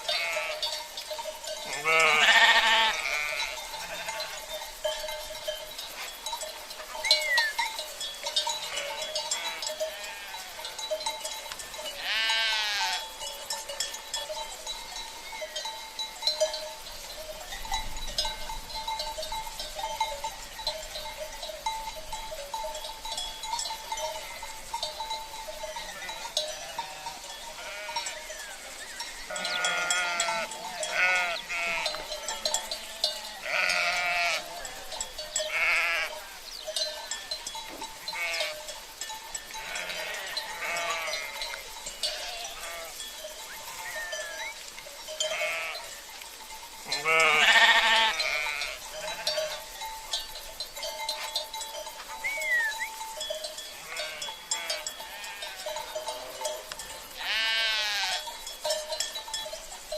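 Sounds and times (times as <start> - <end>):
bells clinking and ringing: 0.0 - 59.9
sheep bleating: 0.1 - 0.7, 1.7 - 4.5, 8.6 - 10.5, 12.0 - 13.1, 25.9 - 28.3, 29.3 - 36.2, 38.1 - 38.6, 39.6 - 41.4, 42.0 - 43.0, 45.3 - 45.9, 46.9 - 49.5, 53.8 - 55.6, 57.2 - 58.2.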